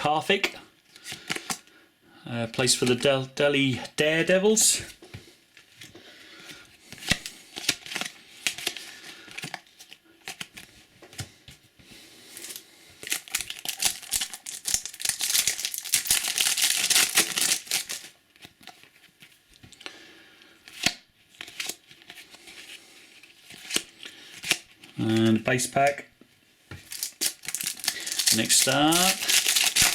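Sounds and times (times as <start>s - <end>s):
wrapper ripping open: 12.4s - 18.2s, 23.3s - 25.4s, 26.9s - 29.9s
trading cards clicking and rustling: 26.8s - 29.9s.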